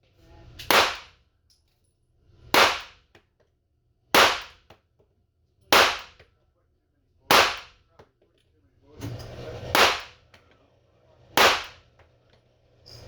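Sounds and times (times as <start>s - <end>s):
handgun shots: 0.6s - 1.2s, 2.5s - 3.0s, 4.2s - 4.7s, 5.8s - 6.2s, 7.3s - 7.8s, 9.8s - 10.2s, 11.4s - 11.9s.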